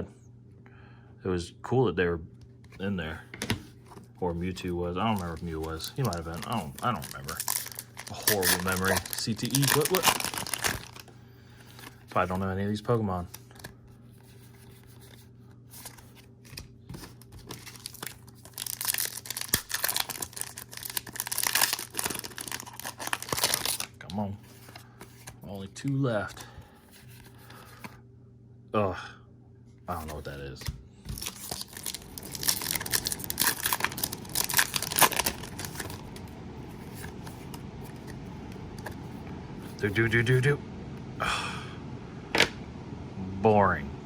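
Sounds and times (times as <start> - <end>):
steady low hum: 0.0 - 44.0
foil wrapper crinkling and tearing: 3.8 - 13.8, 14.5 - 25.4, 29.9 - 40.0.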